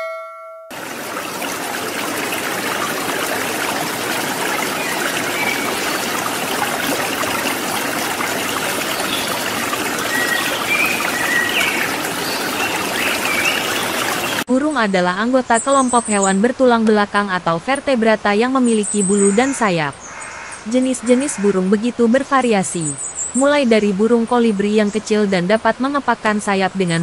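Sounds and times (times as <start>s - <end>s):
stream flowing: 0.7s - 14.5s
high bird chirps: 8.8s - 14.4s.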